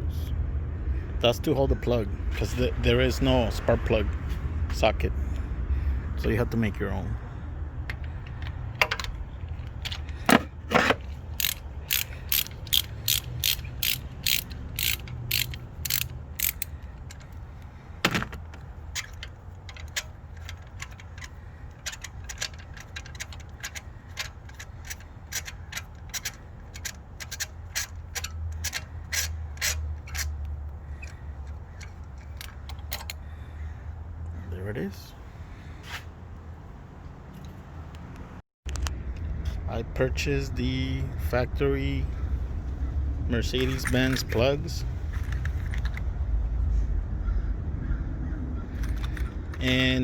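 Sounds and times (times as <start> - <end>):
ratchet clicking: 7.9 - 17.4, 18.2 - 33.2, 48.8 - 50.0.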